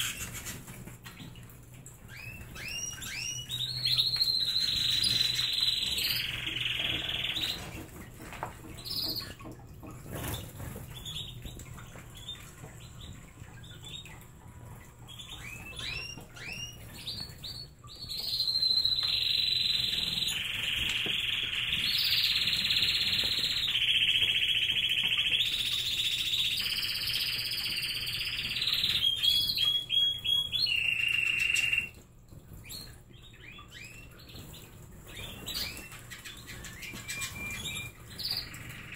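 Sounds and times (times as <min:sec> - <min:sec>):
canary singing: 0:02.1 - 0:07.8, 0:15.1 - 0:32.0.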